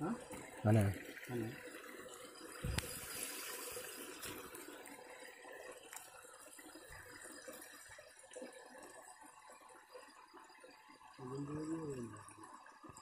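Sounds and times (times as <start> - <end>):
stream running water: 0.0 - 13.0.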